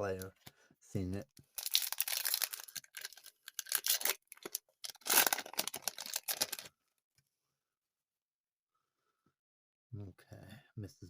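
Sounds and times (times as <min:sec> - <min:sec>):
card pack wrapper tearing and crinkling: 0:01.5 - 0:06.7.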